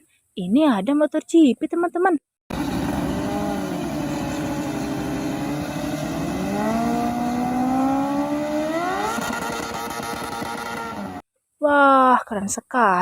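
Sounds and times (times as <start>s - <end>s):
racing motorcycle engine revving: 2.5s - 11.2s.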